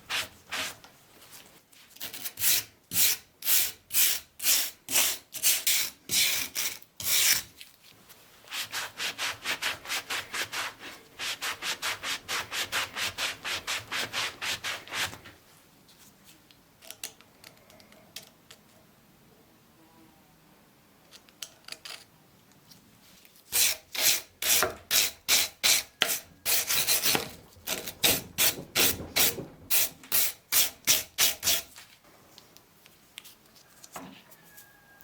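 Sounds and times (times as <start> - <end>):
hand sanding strokes: 8.5 - 15.2.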